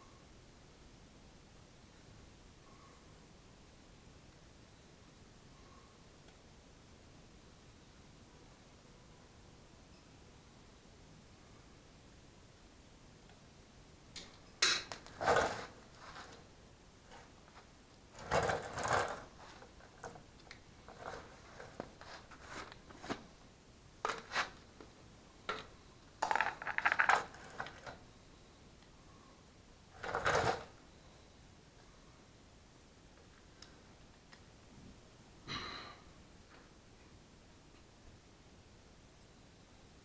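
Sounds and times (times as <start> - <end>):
metal tools clinking and rattling: 14.8 - 16.4, 18.2 - 20.2, 24.1 - 24.6, 25.5 - 28.0.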